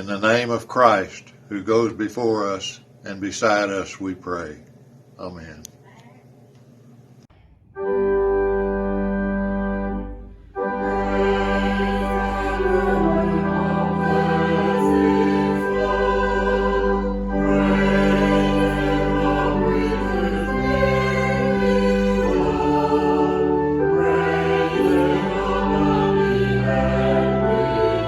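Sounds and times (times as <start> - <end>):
slow music of held chords: 8.0 - 28.0.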